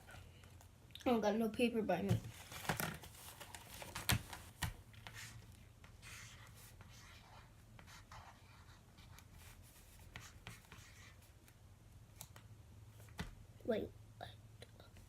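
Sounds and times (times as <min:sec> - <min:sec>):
pen scratching on paper: 0:06.0 - 0:11.2.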